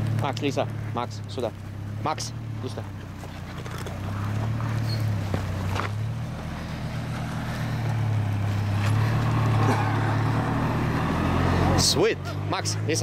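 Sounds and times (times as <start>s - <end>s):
truck engine running: 0.0s - 13.0s.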